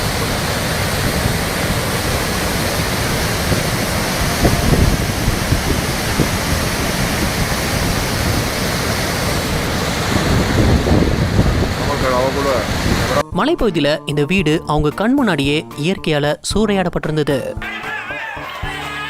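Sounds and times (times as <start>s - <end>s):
rushing flood water: 0.0s - 13.2s.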